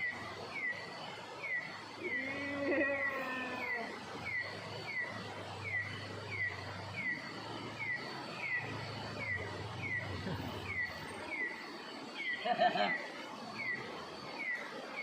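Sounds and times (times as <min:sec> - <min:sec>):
animal calling: 0:02.0 - 0:04.0.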